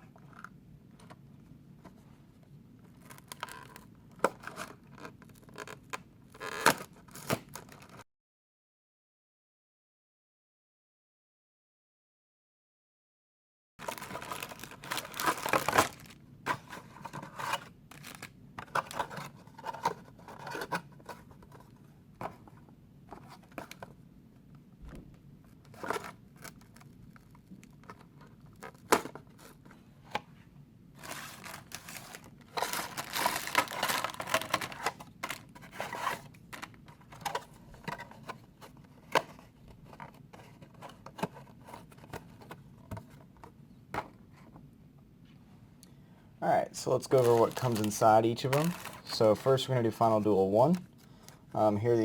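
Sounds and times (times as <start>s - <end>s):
cardboard and paper tearing: 13.8s - 16.2s, 31.0s - 36.2s, 47.1s - 49.5s.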